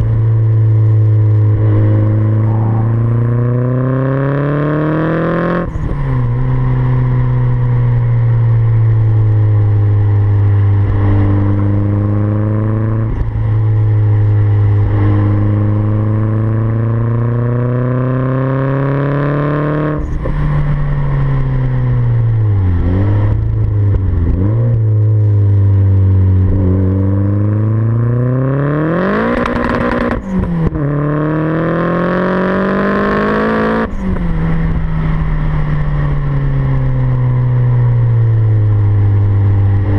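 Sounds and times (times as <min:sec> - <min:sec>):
turbocharged car exhaust under load: 0:00.0 - 0:39.9.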